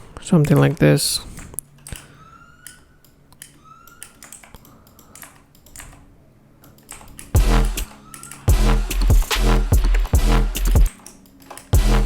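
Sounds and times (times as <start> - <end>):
keyboard and mouse clicks: 0.3 - 8.5, 10.9 - 11.8
electronic dance music: 7.4 - 10.9, 11.8 - 12.0.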